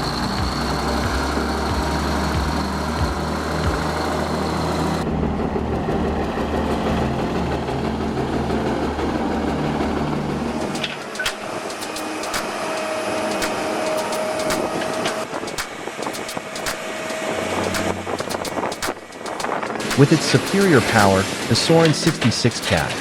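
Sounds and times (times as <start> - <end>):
bulldozer diesel drone: 0.0 - 23.0
machine whine: 0.0 - 23.0
sharp knocks: 10.7 - 20.8.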